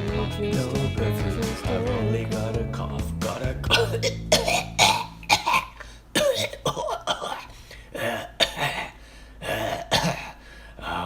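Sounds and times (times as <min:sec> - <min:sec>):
person coughing: 0:03.7 - 0:10.4
throat clearing: 0:03.7 - 0:10.4.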